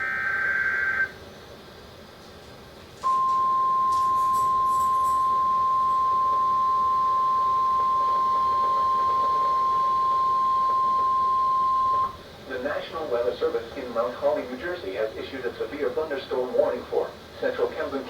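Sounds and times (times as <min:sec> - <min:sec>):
steady alarm beep from radio speaker: 0:03.0 - 0:12.2.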